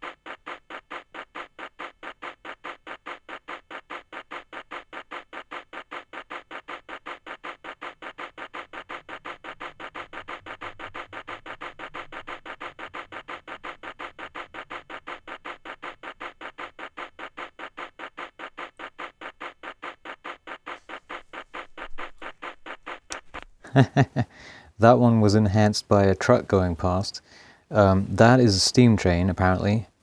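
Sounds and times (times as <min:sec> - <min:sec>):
lo-fi steam train chuffing: 0:23.7 - 0:30.0.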